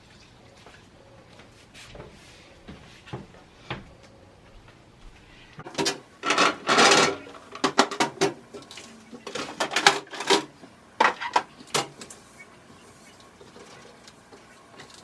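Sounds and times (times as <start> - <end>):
fridge drawers clattering: 5.6 - 15.0.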